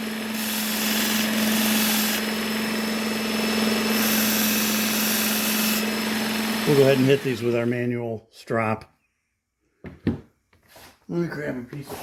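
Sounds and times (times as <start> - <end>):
belt sharpener motor hum: 0.0 - 7.6.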